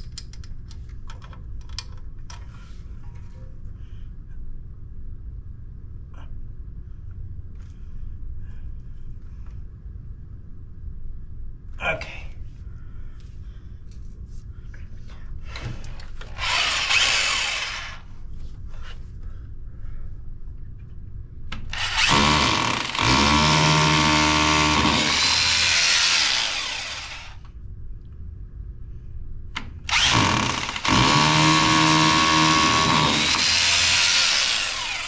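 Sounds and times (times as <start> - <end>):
hammer drill drilling: 16.3 - 18.0, 21.7 - 27.4, 29.9 - 35.0.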